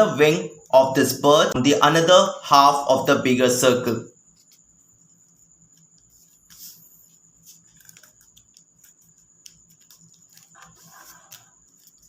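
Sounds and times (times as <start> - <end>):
paper rustling and clicks: 7.5 - 12.0.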